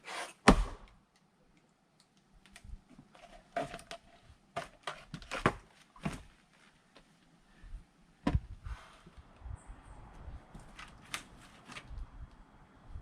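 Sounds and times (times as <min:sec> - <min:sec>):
axe striking log: 0:00.4 - 0:00.9.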